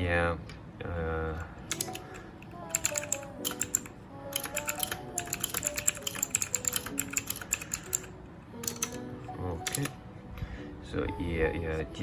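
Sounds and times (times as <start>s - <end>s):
background music: 1.4s - 12.0s
keyboard typing clicks: 1.7s - 10.0s.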